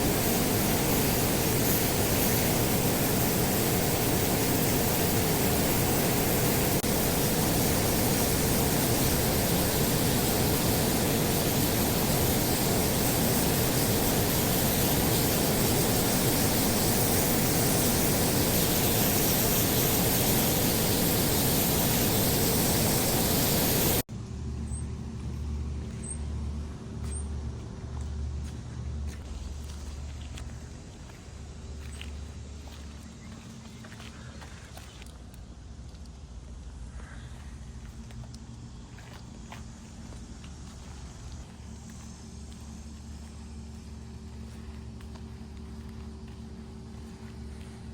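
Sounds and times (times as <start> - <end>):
pressure washer water jet hiss: 0.0 - 24.1
low pulsing hum: 0.0 - 47.9.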